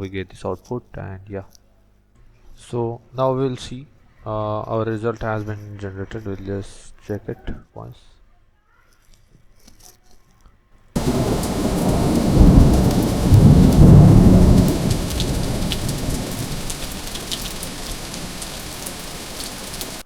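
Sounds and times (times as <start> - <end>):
rain hiss: 11.0 - 20.0
thunder rumbling: 11.0 - 20.0.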